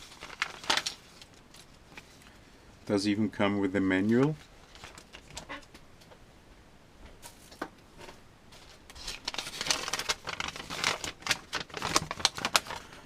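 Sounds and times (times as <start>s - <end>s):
paper rustling and clicking: 0.0s - 2.3s, 4.0s - 5.8s, 7.2s - 13.0s.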